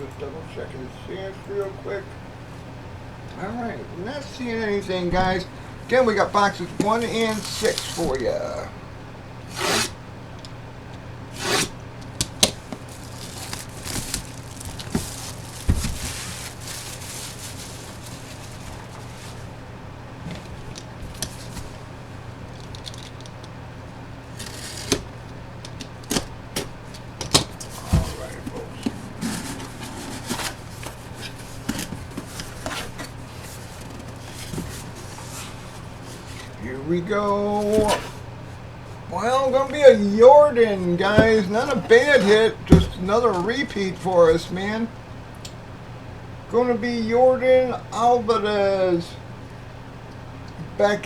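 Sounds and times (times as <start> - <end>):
cardboard rustling: 3.4 - 8.8, 11.2 - 44.7
cardboard swish: 37.6 - 38.2.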